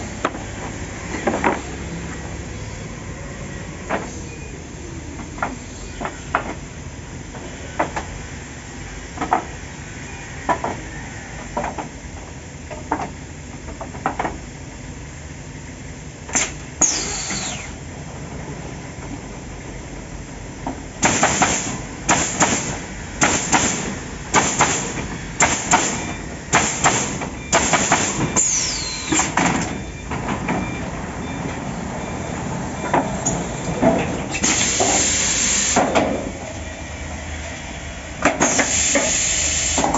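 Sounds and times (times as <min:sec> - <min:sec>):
steady machine noise: 0:14.4 - 0:39.9
bursts of hissing air: 0:16.8 - 0:17.8, 0:21.0 - 0:29.4, 0:34.4 - 0:35.9, 0:38.4 - 0:39.9
machine sharp knocks: 0:21.0 - 0:28.5.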